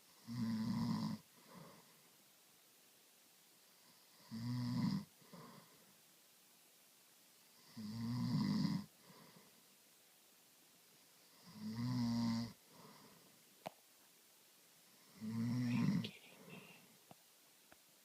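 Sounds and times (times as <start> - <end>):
person snoring heavily: 15.2 - 16.5.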